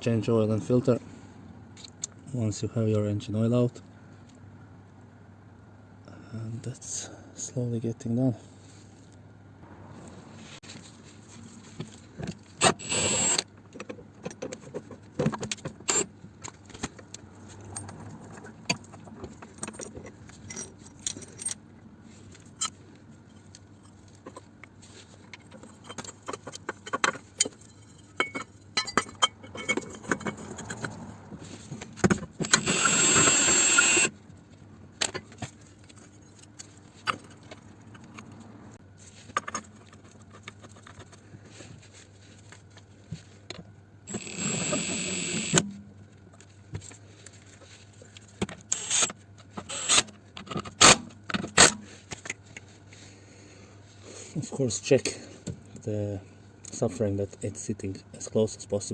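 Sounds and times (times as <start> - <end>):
pneumatic impact wrench: 12.6 - 13.5, 15.8 - 16.1, 32.4 - 34.1, 44.1 - 45.7, 48.7 - 50.1, 50.8 - 51.8
metal tools clinking and knocking: 17.6 - 21.6, 25.4 - 31.0.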